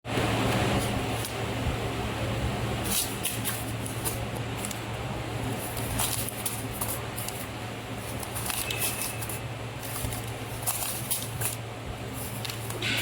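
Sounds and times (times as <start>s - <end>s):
packing machine humming: 0.1s - 13.0s
packaging film rustling: 2.8s - 13.0s.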